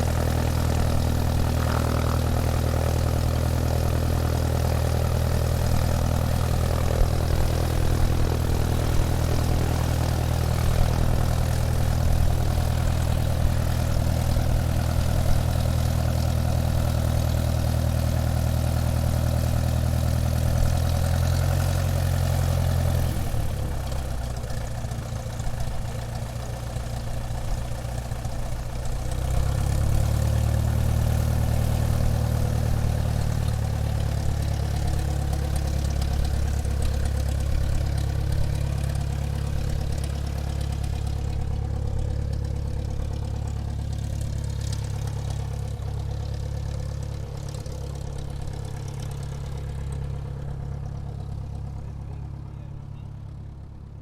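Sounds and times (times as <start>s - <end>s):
airplane engine droning: 0.0s - 15.6s.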